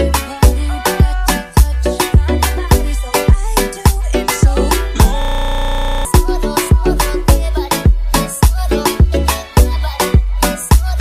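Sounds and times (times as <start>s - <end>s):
dance music with deep bass beat: 0.0s - 11.0s
short synth notes: 5.0s - 6.4s.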